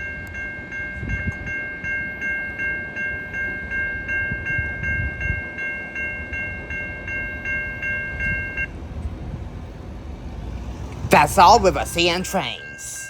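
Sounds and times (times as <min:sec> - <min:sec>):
level crossing warning bell: 0:00.0 - 0:13.0
low rumble: 0:07.7 - 0:13.0.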